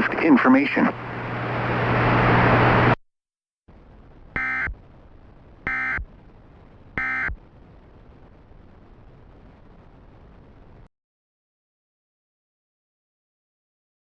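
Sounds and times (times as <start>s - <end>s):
loud static hiss: 0.0s - 3.0s, 3.7s - 10.9s
electronic data bursts: 4.4s - 4.8s, 5.6s - 6.2s, 7.0s - 7.4s.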